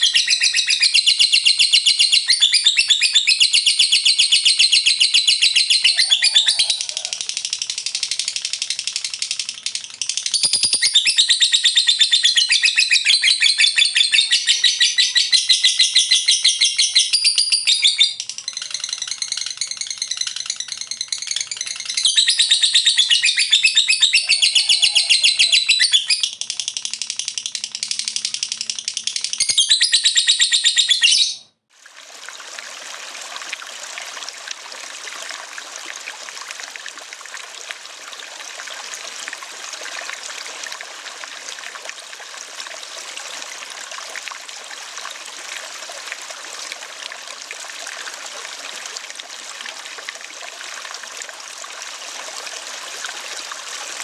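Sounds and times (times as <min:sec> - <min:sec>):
lovebird chattering song: 0:00.0 - 0:31.4
flowing stream water: 0:23.2 - 0:25.7, 0:31.7 - 0:54.0.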